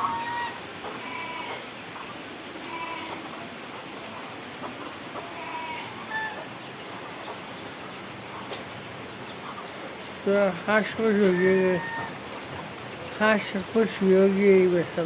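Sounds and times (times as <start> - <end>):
poultry calling: 0.0 - 3.9, 4.6 - 7.4, 10.4 - 14.4
steady rain: 0.0 - 15.0.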